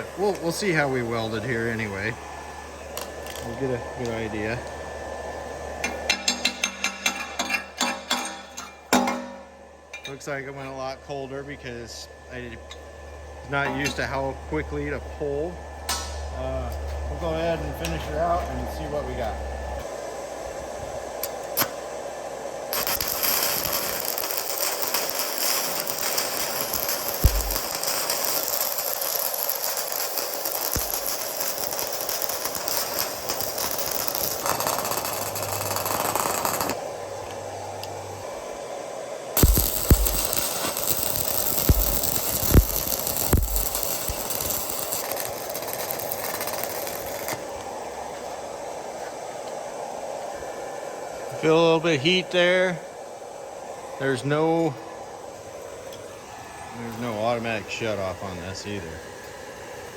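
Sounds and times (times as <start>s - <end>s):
welding arc crackling: 0.0s - 10.5s, 22.5s - 38.4s, 39.4s - 48.4s
steady hum: 0.0s - 59.9s.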